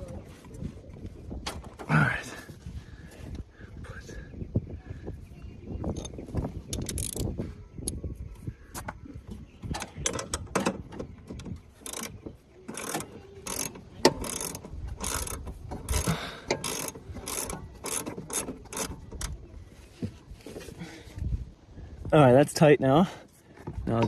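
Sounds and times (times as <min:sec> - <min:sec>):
ratchet wrench clicking: 0:05.9 - 0:07.3, 0:11.8 - 0:19.4.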